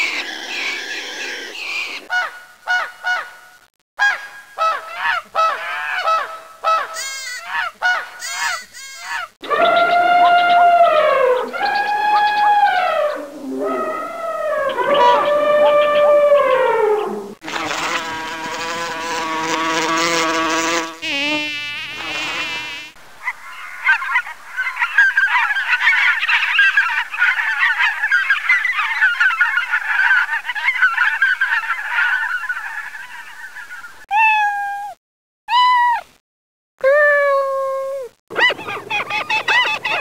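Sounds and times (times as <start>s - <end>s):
flock calling: 4.0s - 16.4s, 38.3s - 40.0s
animal buzzing: 17.4s - 23.0s.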